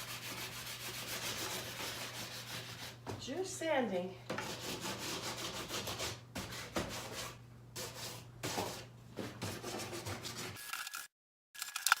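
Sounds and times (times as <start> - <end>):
sandpaper rubbing strokes: 0.0 - 3.0.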